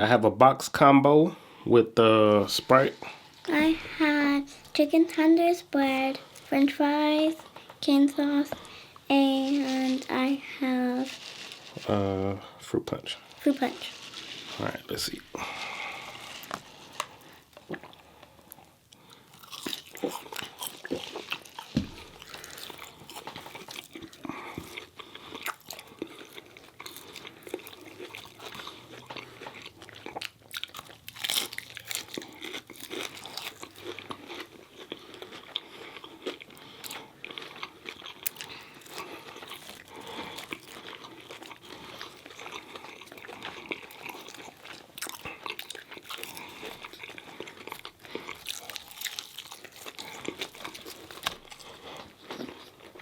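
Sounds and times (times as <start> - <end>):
chewing crunchy food: 2.6 - 12.6, 13.2 - 53.0.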